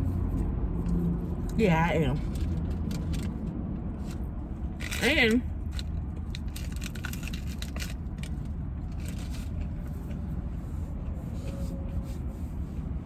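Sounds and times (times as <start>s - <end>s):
low rumble inside car: 0.0s - 13.0s
small clicks and scrapes: 2.2s - 11.6s.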